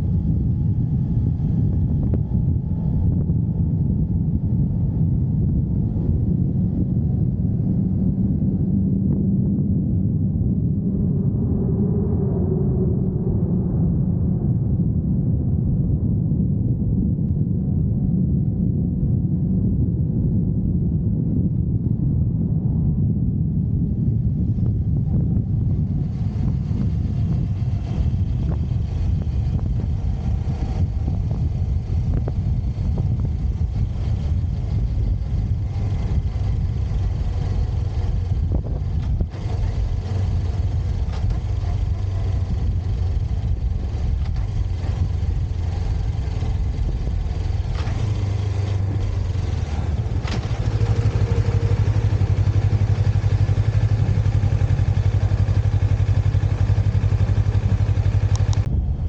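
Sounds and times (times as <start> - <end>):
motorcycle engine running: 0.0 - 10.8, 23.1 - 59.0.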